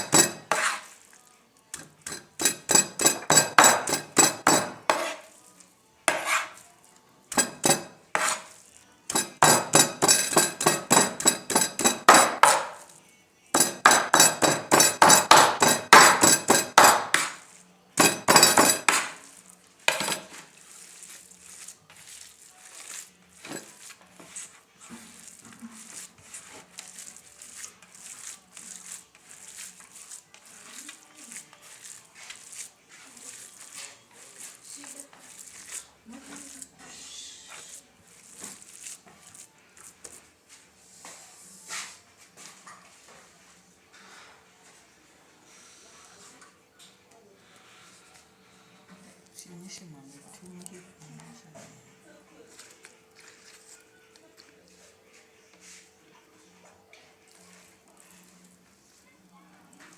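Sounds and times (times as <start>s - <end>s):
metal utensil knocking: 1.8s - 5.1s, 13.6s - 17.3s, 18.0s - 19.1s, 19.9s - 20.3s.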